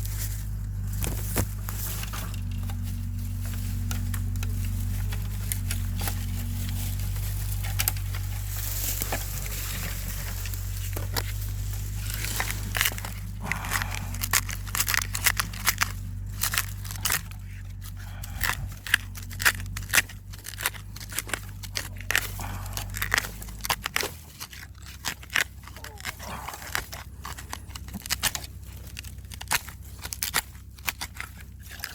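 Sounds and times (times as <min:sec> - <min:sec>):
branch scraping soil and leaves: 0:00.0 - 0:31.9
steady low rumble: 0:00.0 - 0:31.9.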